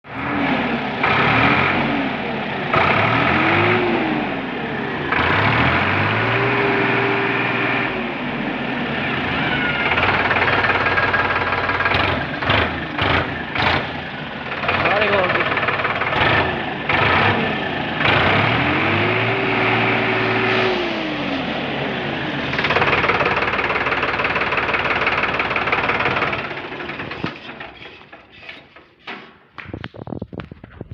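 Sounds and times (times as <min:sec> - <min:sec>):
tractor diesel engine revving: 0:00.0 - 0:28.9
harsh high-pitched engine layer: 0:14.6 - 0:27.4.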